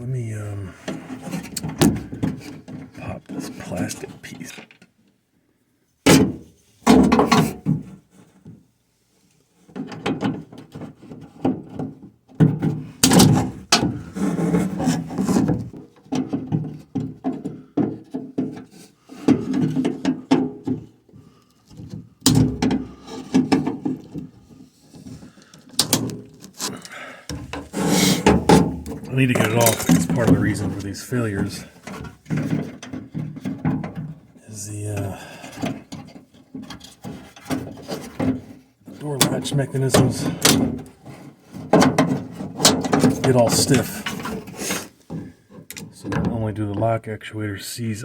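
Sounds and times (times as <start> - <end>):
plastic rubbing and scraping: 0.0 - 4.8, 9.6 - 46.8
sharp knocks and thunks: 1.5 - 2.9, 6.1 - 7.9, 12.4 - 18.6, 21.7 - 24.0, 27.3 - 34.2.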